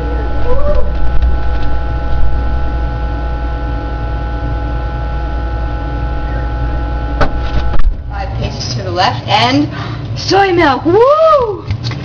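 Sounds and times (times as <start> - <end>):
low rumble: 0.0 - 9.5
electrical hum: 0.0 - 12.0.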